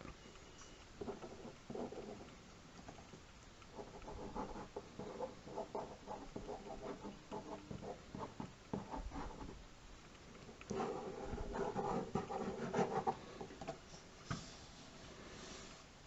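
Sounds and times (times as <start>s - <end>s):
scratchy drawing strokes on paper: 3.8s - 9.6s, 10.7s - 13.2s.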